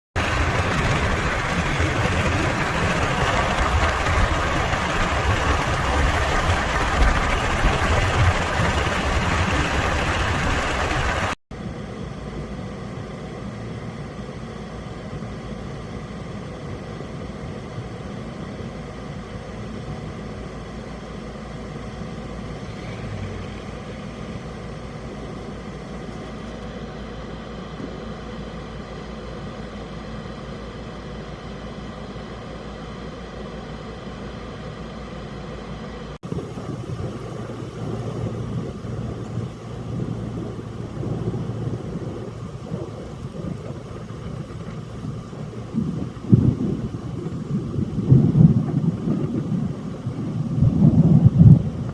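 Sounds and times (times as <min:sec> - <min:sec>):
car engine and road hum: 0:00.1 - 0:51.9.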